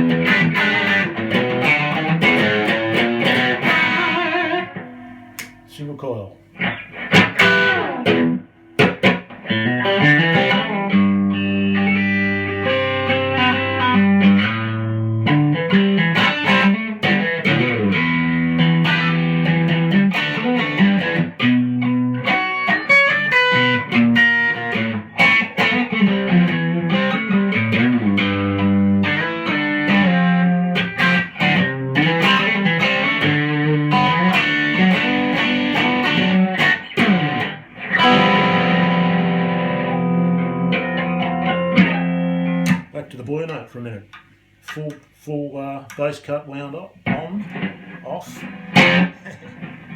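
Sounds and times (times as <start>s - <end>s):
overdriven electric guitar: 0.0s - 5.7s, 6.6s - 42.9s, 47.0s - 49.9s.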